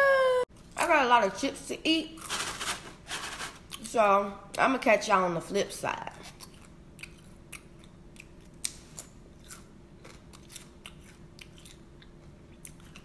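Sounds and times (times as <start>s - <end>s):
faint steady hum: 0.0s - 13.0s
chips being crunched: 2.2s - 3.8s.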